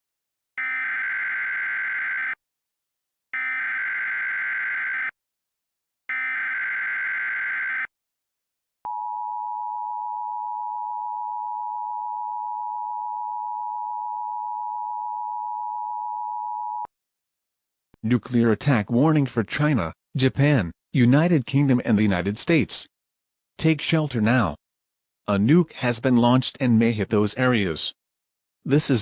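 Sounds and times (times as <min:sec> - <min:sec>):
warbling data tone bursts: 0:06.1 - 0:07.9.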